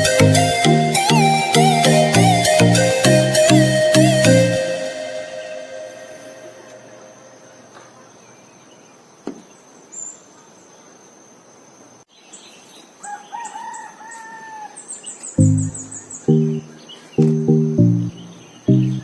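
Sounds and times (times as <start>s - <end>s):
music: 0.0s - 6.6s, 15.4s - 19.0s
rapid high chirps: 0.0s - 6.6s, 15.4s - 19.0s
rooster crowing: 13.0s - 14.8s.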